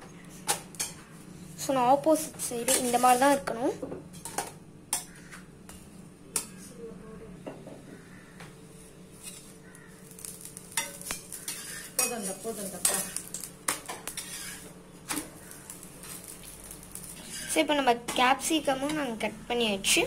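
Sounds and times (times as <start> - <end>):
food sizzling: 2.0 - 3.5, 9.1 - 19.9
spatula scraping a pan: 2.4 - 3.5, 8.7 - 14.8, 15.4 - 18.2.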